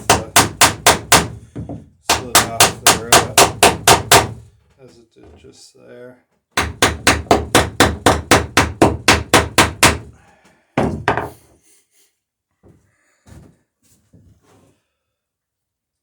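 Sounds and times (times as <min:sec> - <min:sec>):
hammer striking rivet: 0:00.0 - 0:04.4, 0:06.6 - 0:10.1.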